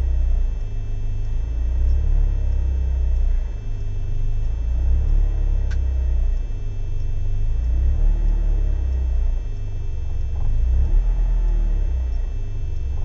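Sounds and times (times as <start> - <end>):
engine idling roughly: 8.6 - 13.0.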